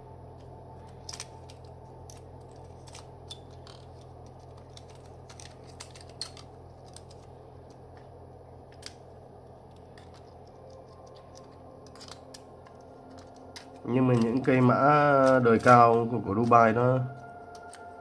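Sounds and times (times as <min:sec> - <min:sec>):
steady low hum: 0:00.0 - 0:18.0
phone parts clicking and tapping: 0:01.0 - 0:08.1, 0:09.6 - 0:16.0, 0:17.5 - 0:17.9.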